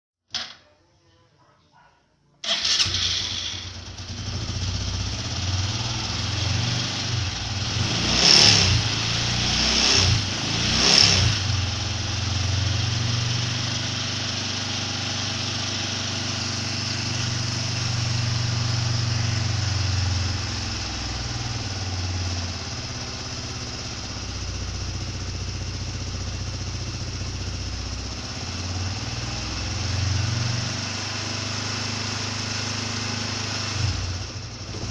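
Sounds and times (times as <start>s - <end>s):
motorcycle engine idling and revving: 2.5s - 34.9s.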